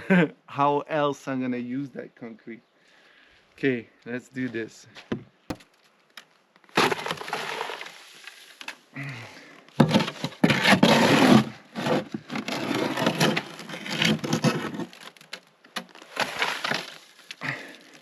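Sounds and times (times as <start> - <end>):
wet concrete scraping and crunching: 5.6 - 8.8, 9.7 - 18.0.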